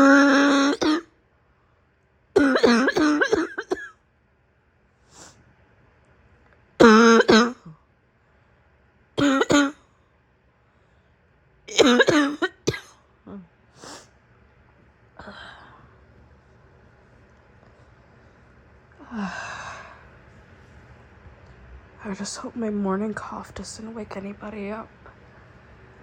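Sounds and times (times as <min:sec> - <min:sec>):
woman coughing: 0:00.0 - 0:01.1, 0:02.4 - 0:04.0, 0:06.8 - 0:07.8, 0:09.2 - 0:09.8, 0:11.7 - 0:13.0.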